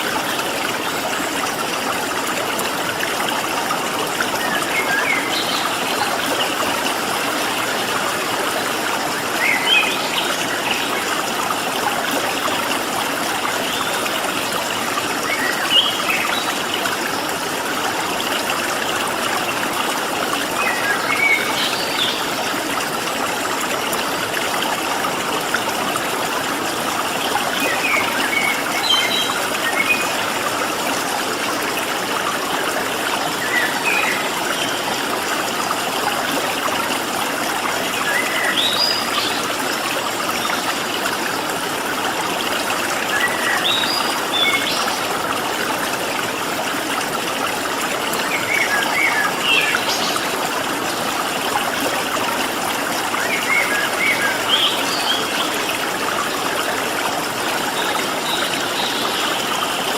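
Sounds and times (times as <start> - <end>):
stream water rushing: 0.0 - 59.9.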